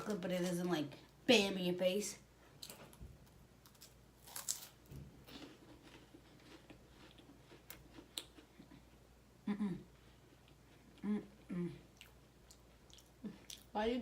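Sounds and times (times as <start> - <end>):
crunching wafer cookies: 3.6 - 8.8
chewing: 3.7 - 8.9, 11.9 - 13.7.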